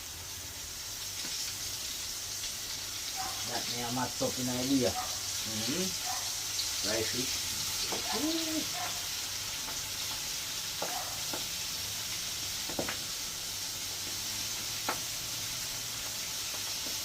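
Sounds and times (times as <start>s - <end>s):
fish frying in hot oil: 0.0s - 17.0s.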